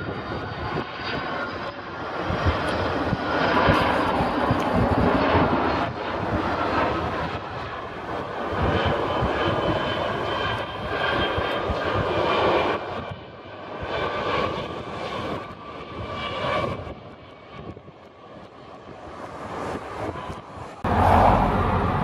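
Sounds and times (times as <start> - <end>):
jet engines roaring with whine: 0.0 - 22.0.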